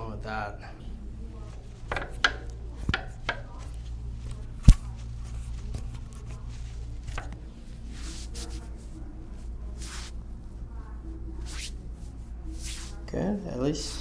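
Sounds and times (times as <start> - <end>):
chiropractic adjustment knocks: 1.6 - 7.4.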